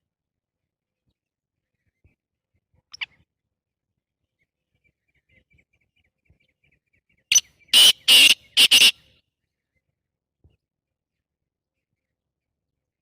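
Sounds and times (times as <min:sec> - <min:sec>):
francolin calling: 0:07.3 - 0:09.0.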